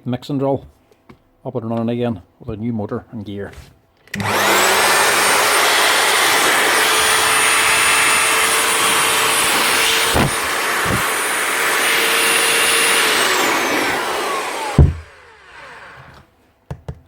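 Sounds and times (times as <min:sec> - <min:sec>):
drill motor whining: 0:04.2 - 0:16.2
drill winding down: 0:04.2 - 0:16.2
knocks: 0:14.7 - 0:15.1.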